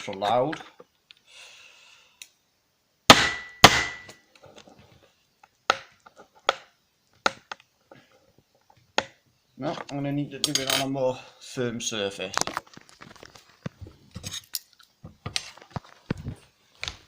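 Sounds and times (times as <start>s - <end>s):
sharp whacks on metal screws: 3.1s - 4.2s.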